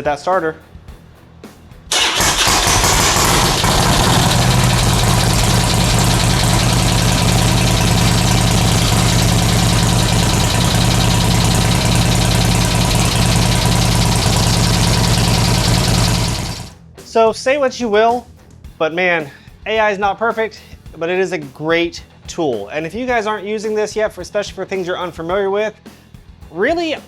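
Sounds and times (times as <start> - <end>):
motorcycle engine idling: 1.9 - 16.7.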